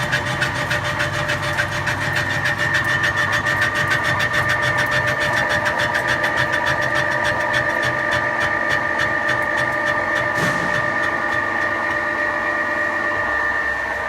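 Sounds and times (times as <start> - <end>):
machine tool cutting metal: 0.0 - 12.4.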